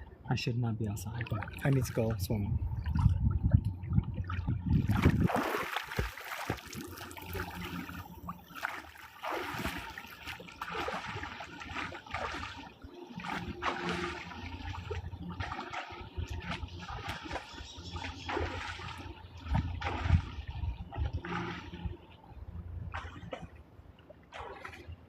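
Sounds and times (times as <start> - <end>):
low rumble: 0.0 - 6.1, 12.8 - 23.9
pool water sloshing and splashing: 0.8 - 25.0.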